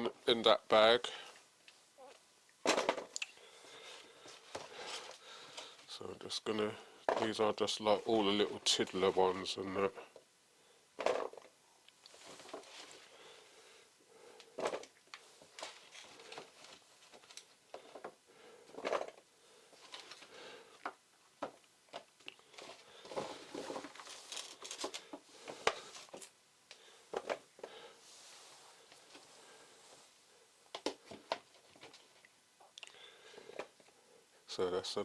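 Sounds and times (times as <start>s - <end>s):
potatoes thudding into bag: 2.6s - 3.2s
plastic bag crinkling: 22.4s - 26.3s.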